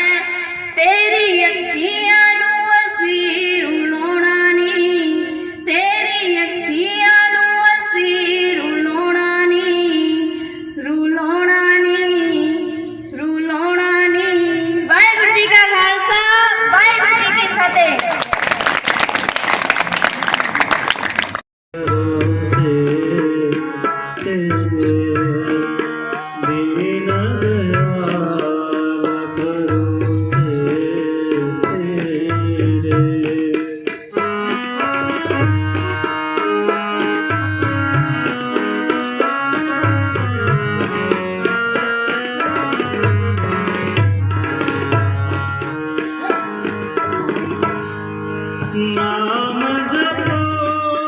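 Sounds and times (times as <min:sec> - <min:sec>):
tabla beat: 0:16.7 - 0:51.0
held melody: 0:34.2 - 0:50.0.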